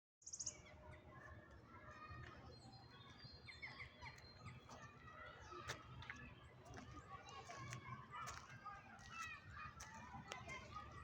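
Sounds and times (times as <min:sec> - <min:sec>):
small bird chirps: 0:00.2 - 0:00.7.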